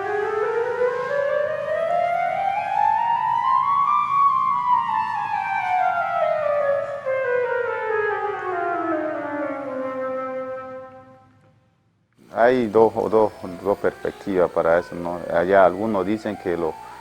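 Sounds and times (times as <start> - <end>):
siren wailing: 0.0 - 10.9.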